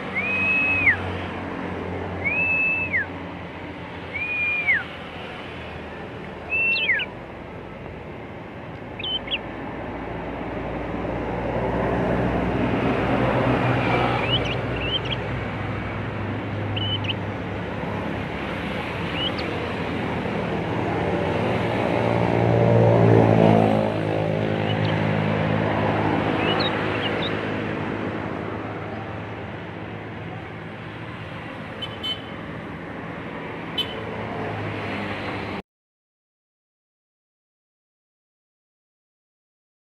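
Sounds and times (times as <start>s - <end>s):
road traffic noise: 0.0s - 35.6s
bird chirping: 2.2s - 3.1s, 4.1s - 4.9s, 6.4s - 7.2s, 8.9s - 9.5s, 14.2s - 15.3s, 16.7s - 17.3s, 19.1s - 19.7s, 24.6s - 25.0s, 26.4s - 27.4s
vehicle engine passing: 8.9s - 31.7s.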